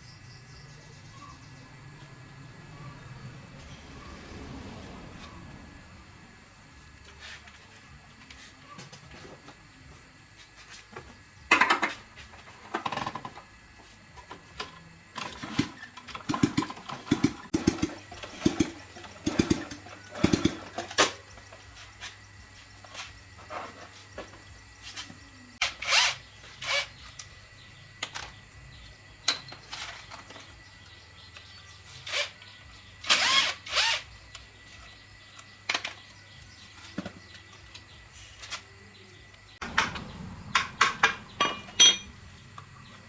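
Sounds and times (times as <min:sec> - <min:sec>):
hand tools clanking on metal: 0:39.6 - 0:43.0.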